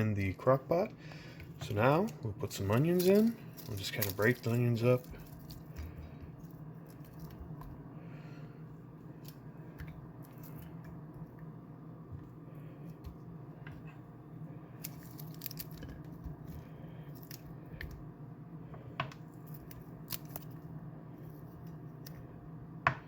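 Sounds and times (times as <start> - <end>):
steady low hum: 0.0 - 23.0
onion pieces crackling and squishing: 1.6 - 7.9, 14.7 - 18.1, 19.2 - 22.2.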